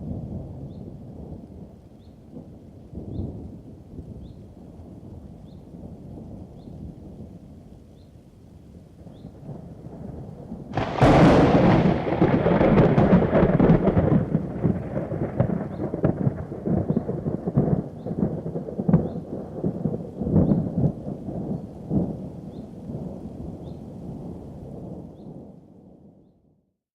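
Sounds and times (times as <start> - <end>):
thunder crack and rumble: 9.1 - 26.1.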